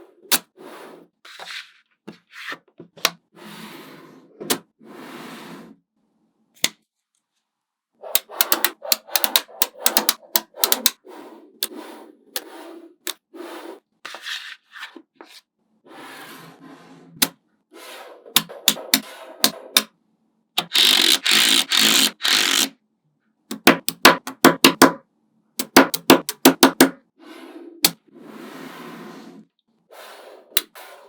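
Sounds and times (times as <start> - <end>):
magnetic balls snapping together: 8.2 - 11.0, 23.5 - 24.9, 25.6 - 27.0.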